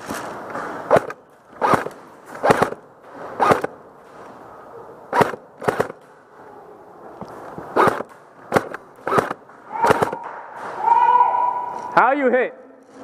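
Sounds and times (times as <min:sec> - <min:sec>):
airsoft gun shots: 0:00.9 - 0:02.8, 0:05.1 - 0:06.0, 0:07.8 - 0:10.7.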